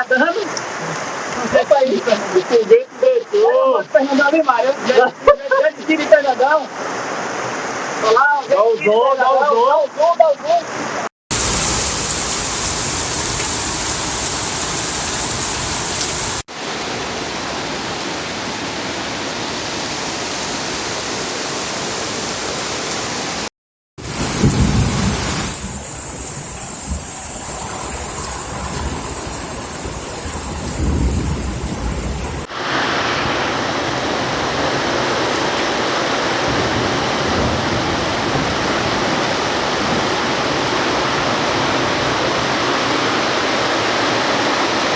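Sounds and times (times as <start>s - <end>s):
floodwater rushing: 11.3s - 23.4s, 24.0s - 44.9s
heavy rain pouring: 11.3s - 44.9s
deep rumble: 24.1s - 32.5s.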